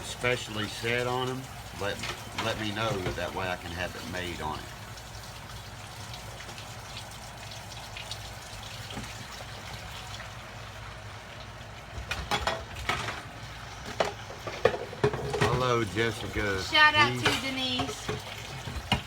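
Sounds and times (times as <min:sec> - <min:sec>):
water running: 0:00.0 - 0:19.0
knocks and clatters: 0:13.9 - 0:15.7.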